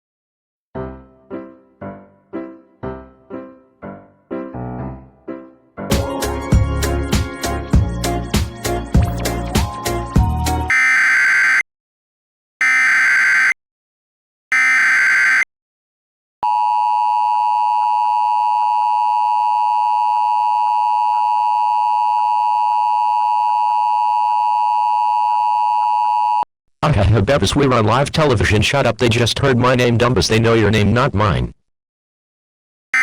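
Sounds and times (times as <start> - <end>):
screechy data tones: 14.6 - 15.4.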